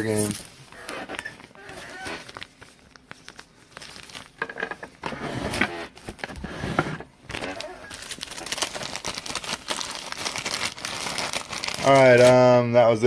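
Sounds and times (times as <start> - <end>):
cards and plastic packaging handled: 0.0 - 5.0, 7.2 - 12.6.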